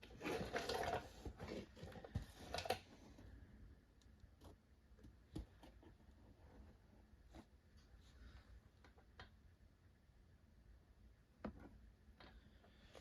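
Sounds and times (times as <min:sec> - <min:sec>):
rustling and shuffling: 0:00.0 - 0:03.5.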